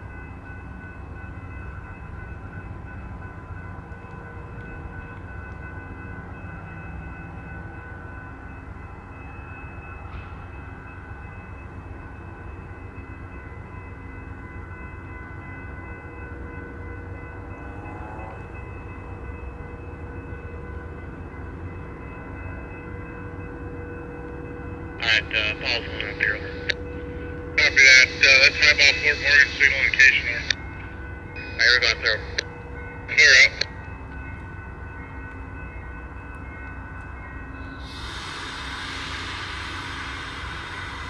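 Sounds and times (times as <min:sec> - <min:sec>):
constant whine of held tones: 0:00.0 - 0:41.0
diesel locomotives idling: 0:24.2 - 0:33.7, 0:37.8 - 0:41.0.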